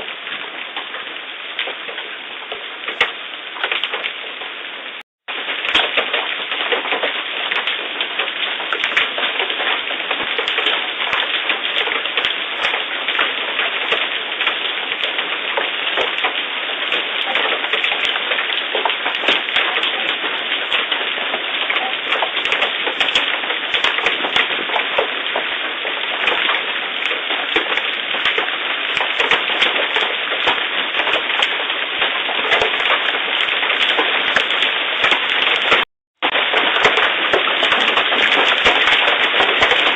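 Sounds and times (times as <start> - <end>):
hail pelting down: 0.0 - 39.9
rain: 0.0 - 39.9.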